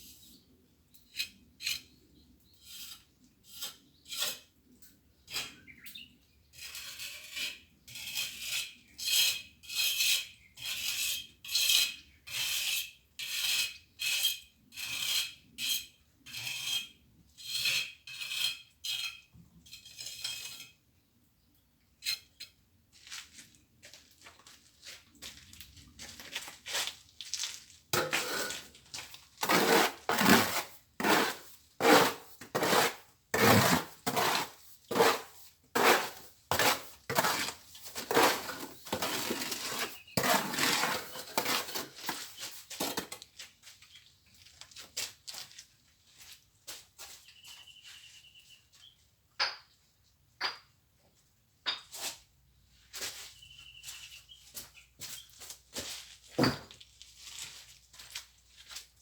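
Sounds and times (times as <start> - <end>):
trowel scraping cement mortar: 2.6 - 4.5, 6.6 - 20.8, 28.0 - 43.2.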